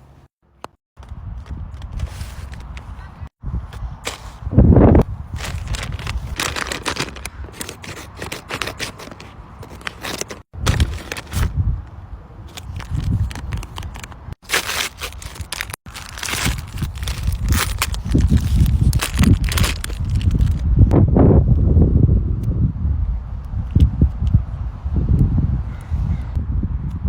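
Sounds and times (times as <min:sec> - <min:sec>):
paper crinkling and tearing: 0:02.0 - 0:03.1, 0:04.0 - 0:04.5, 0:05.3 - 0:11.5, 0:12.5 - 0:20.6.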